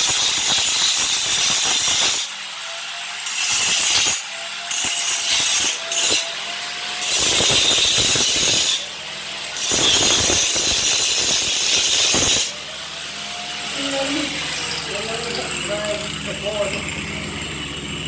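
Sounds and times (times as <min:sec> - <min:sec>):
angle grinder grinding metal: 0:00.0 - 0:18.0.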